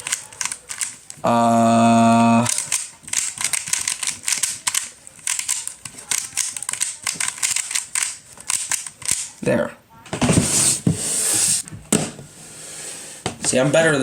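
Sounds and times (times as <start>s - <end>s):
puzzle cube clicking: 0.0s - 1.2s, 2.3s - 9.4s.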